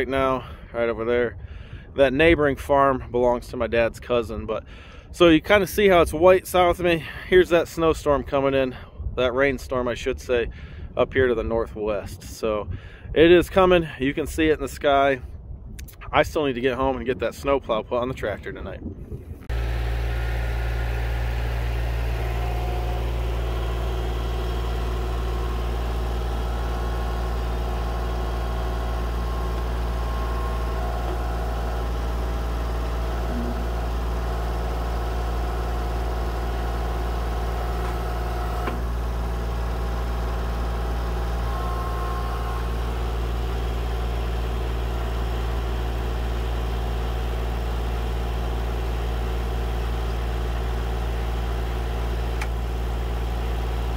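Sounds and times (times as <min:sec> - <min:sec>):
engine humming: 0:19.2 - 0:53.9.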